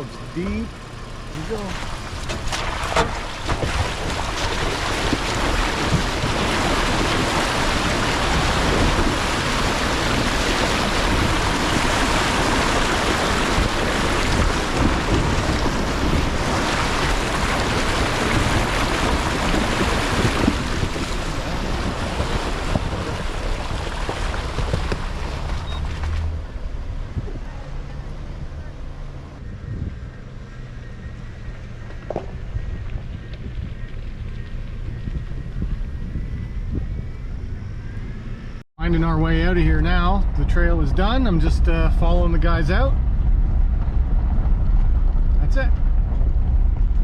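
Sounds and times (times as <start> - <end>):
water rushing and splashing: 1.4 - 26.8.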